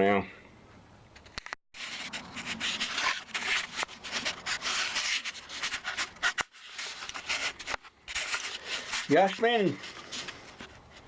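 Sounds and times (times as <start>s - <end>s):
rubbing and scraping: 1.8s - 11.0s.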